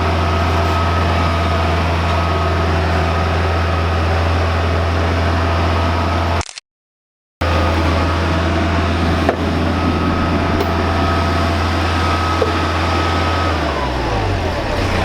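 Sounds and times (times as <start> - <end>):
skid steer engine humming: 0.0 - 6.4, 7.4 - 15.0.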